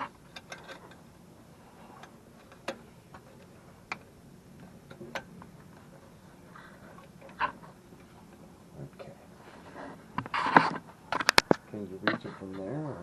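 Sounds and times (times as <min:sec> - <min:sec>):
faint steady background noise: 0:00.0 - 0:13.0.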